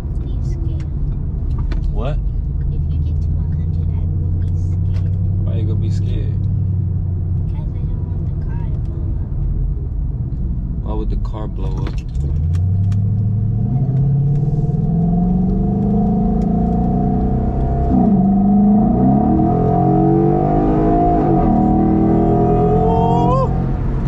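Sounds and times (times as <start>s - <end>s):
car engine accelerating hard: 10.3s - 24.0s.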